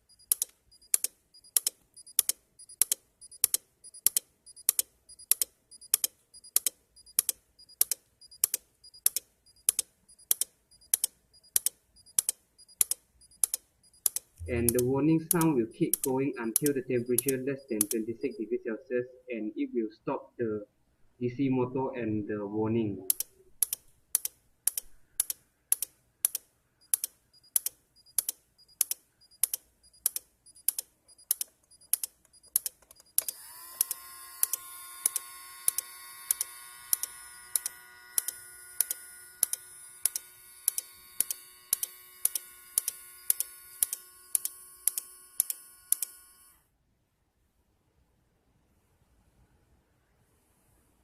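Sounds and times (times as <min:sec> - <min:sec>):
small motor whining: 0:33.2 - 0:46.6.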